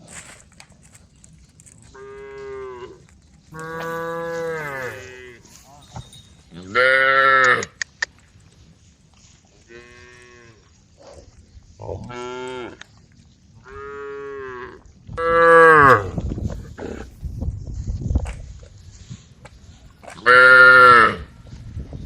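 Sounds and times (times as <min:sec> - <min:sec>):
cattle mooing: 0:01.9 - 0:05.5, 0:20.2 - 0:21.3.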